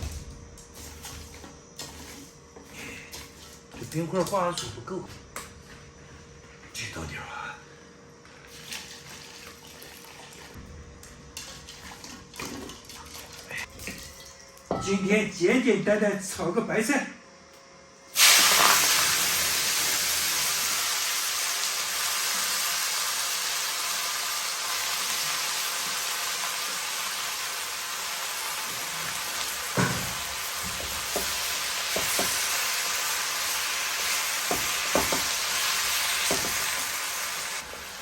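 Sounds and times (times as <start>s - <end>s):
cabbage sizzling in hot oil: 18.2s - 38.0s
spatula knocking on pan: 29.8s - 32.4s, 34.5s - 35.4s.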